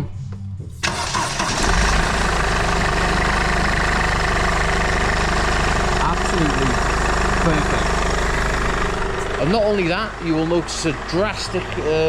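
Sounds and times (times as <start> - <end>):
diesel engine cranking: 0.8 - 12.0
diesel engine idling: 0.8 - 12.0.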